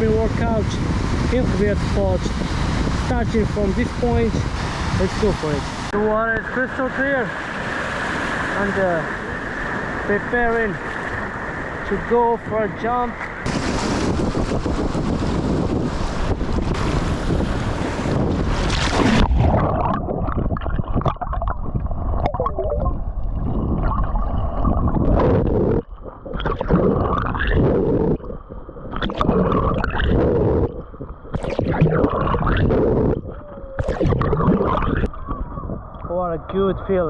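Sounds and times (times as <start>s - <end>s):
muffled underwater gurgling: 18.0s - 37.0s.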